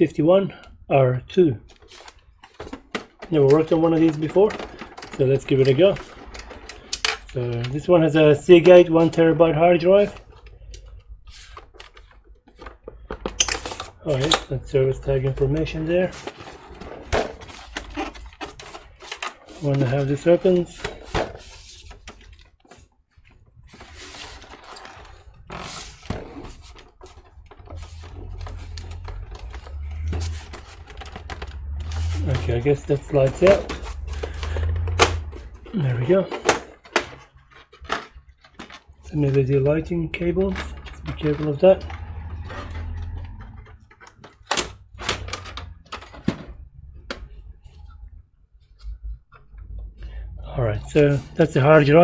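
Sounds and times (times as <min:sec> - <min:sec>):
computer case rubbing and scraping: 0:01.9 - 0:49.5
low hum: 0:27.4 - 0:35.8
low rumble: 0:27.5 - 0:35.8.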